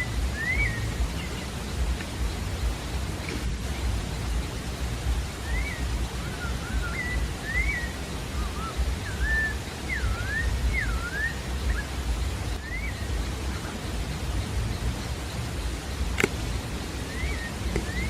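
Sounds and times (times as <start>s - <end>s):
low rumbling noise: 0.0s - 18.0s
thrush singing: 0.0s - 18.0s.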